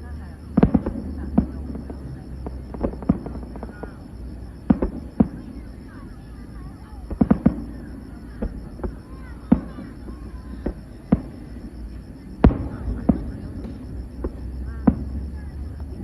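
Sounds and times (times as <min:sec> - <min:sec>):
faint crowd chatter: 0:00.0 - 0:16.0
fireworks booming: 0:00.0 - 0:16.0.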